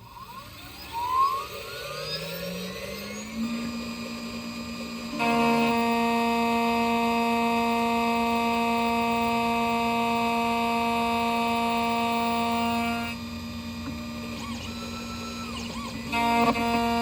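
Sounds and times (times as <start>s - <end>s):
short motor chirps: 0.0s - 13.2s
key cutting machine whine: 0.0s - 17.0s
quiet machine whirr: 0.0s - 17.0s.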